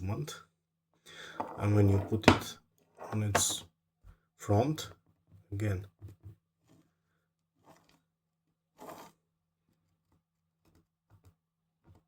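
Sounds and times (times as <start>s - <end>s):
soft scrape on glass: 8.8s - 9.2s.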